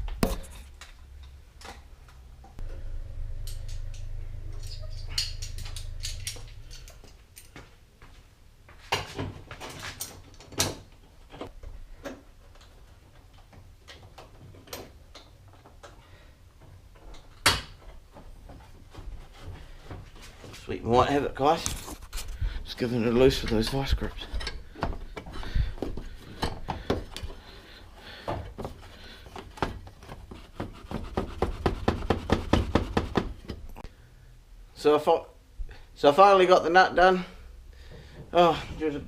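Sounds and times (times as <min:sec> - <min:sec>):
low steady rumble: 0:02.2 - 0:07.1
hand tools clicking on metal: 0:03.4 - 0:07.6.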